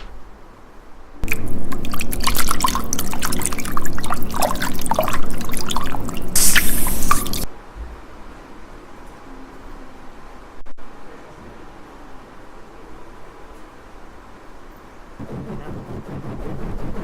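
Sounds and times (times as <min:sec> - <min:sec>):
water drips and wet plops: 0:01.2 - 0:07.5
hiss burst: 0:06.4 - 0:07.5.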